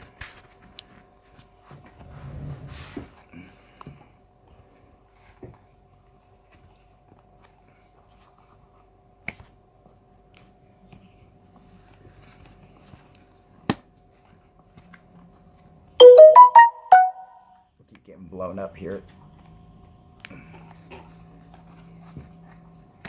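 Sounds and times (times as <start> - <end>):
phone notification tones: 16.0 - 17.4.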